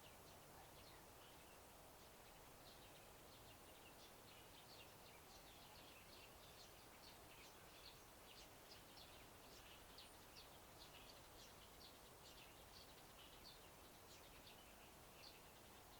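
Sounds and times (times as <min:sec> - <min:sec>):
small birds chirping: 0:00.0 - 0:15.9.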